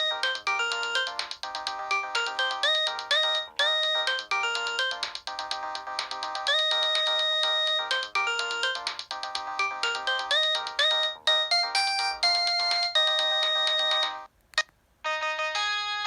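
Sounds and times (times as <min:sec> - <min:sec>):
different ringtone: 0:00.0 - 0:14.3, 0:15.1 - 0:16.0
ringtone melody of quick notes: 0:00.0 - 0:14.3, 0:15.1 - 0:16.0.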